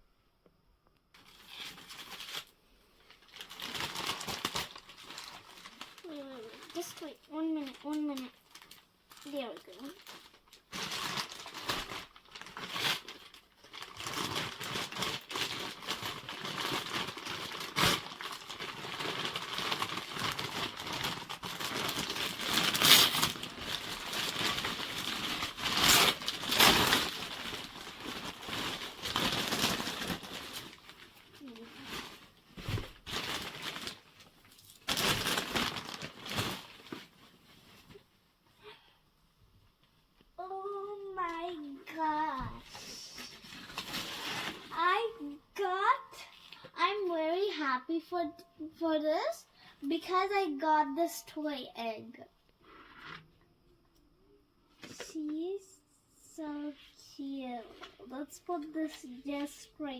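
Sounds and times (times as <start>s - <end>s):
gift wrapping torn and crumpled: 1.2s - 38.0s, 43.1s - 45.1s.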